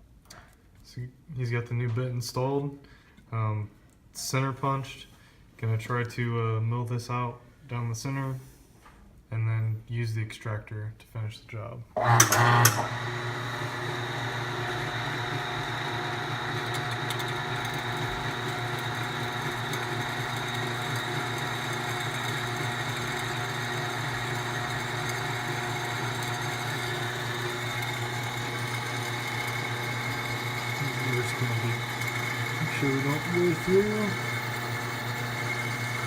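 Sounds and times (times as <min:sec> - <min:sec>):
milling machine motor hum: 0:12.0 - 0:36.0.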